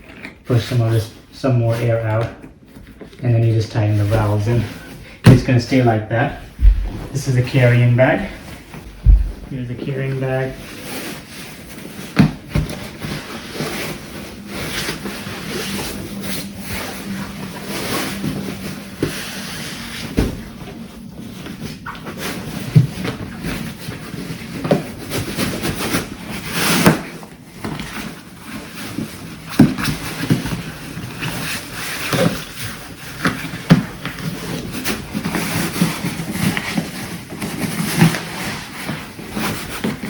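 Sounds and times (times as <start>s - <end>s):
fabric rustling and scraping: 0.5s - 40.0s
bumps and knocks: 6.4s - 9.8s.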